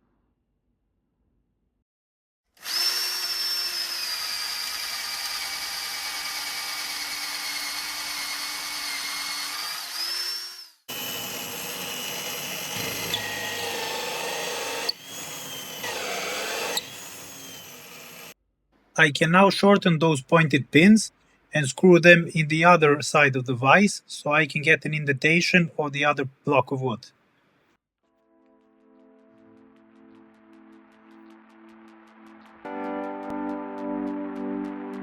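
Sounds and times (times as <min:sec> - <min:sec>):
power tool motor whining: 0:02.6 - 0:18.4.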